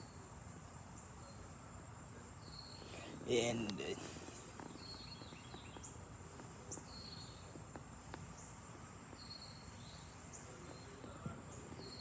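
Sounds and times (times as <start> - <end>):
bird chirps: 4.3 - 6.0, 6.6 - 7.6, 8.2 - 12.0
insect trill: 8.0 - 12.0.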